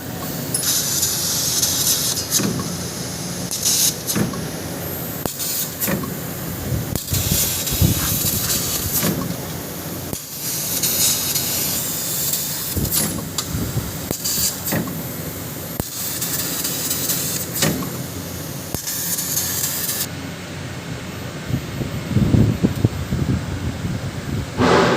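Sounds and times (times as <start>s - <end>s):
assist gas hissing in bursts: 0.0s - 4.2s, 5.1s - 20.1s
steady machine hum: 24.6s - 24.9s.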